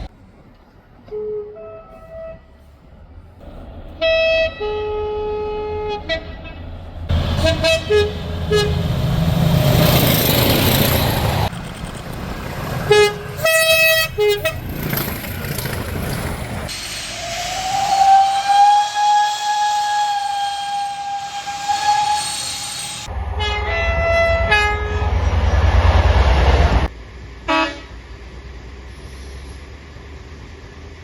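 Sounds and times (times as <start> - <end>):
train passing: 0.0 - 31.0
two-tone locomotive horn: 1.1 - 2.8, 4.0 - 10.0, 12.8 - 14.7, 17.2 - 25.3, 27.4 - 28.0.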